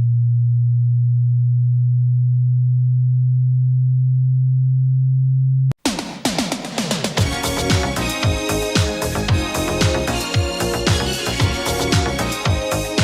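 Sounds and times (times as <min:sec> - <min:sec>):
low sine test tone: 0:00.0 - 0:05.7
music: 0:05.8 - 0:13.0.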